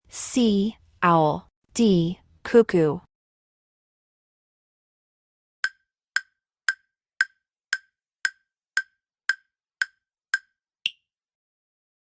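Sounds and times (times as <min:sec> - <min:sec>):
countdown timer ticks: 0:05.6 - 0:11.0.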